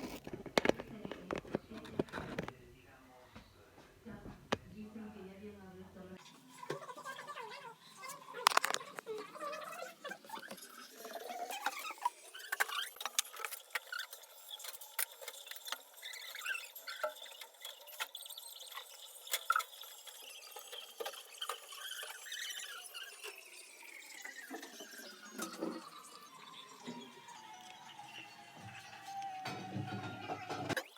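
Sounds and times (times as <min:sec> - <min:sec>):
welding arc crackling: 0:00.0 - 0:00.3
faint high whine: 0:23.2 - 0:30.8.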